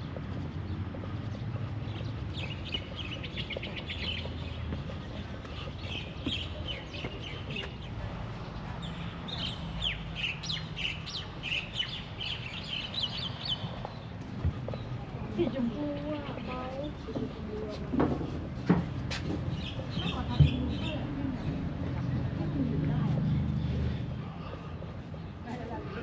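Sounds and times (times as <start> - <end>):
small birds chirping: 0.0 - 17.4, 19.4 - 25.7.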